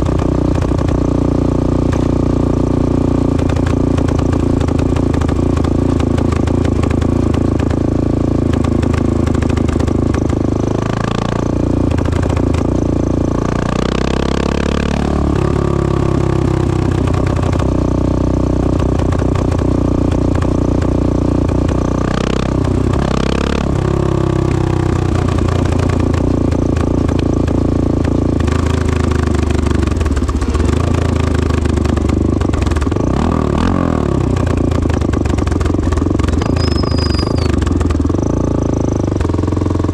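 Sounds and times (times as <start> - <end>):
motorcycle engine running loudly: 0.0 - 39.9.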